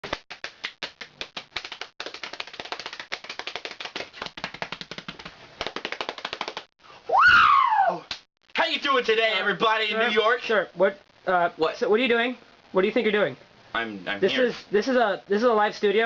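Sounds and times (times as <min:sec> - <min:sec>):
loud rising cry: 0:07.1 - 0:08.1.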